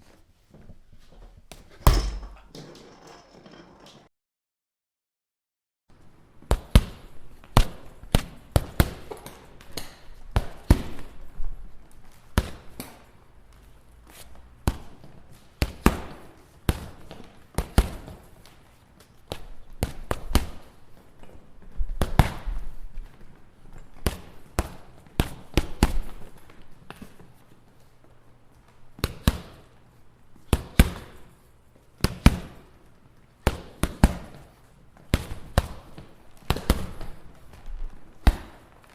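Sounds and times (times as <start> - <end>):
boxing punches thudding: 1.5 - 2.5.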